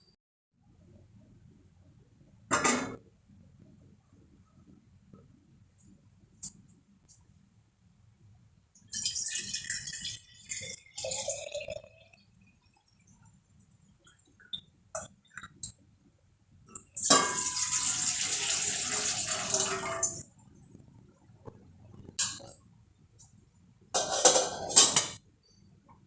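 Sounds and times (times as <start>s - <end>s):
water running and splashing: 17.2s - 20.2s.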